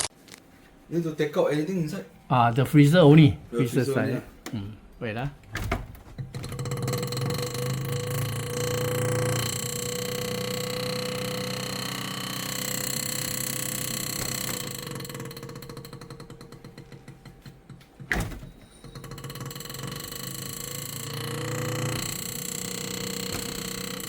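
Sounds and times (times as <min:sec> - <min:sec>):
freezer fan rattling on ice: 0:06.2 - 0:24.0.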